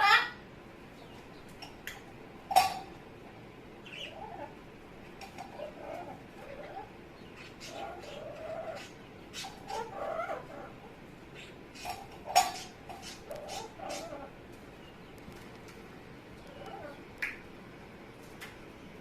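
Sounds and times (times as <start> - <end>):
parrot vocal noises: 0.0 - 0.4, 3.8 - 14.4, 16.4 - 17.1.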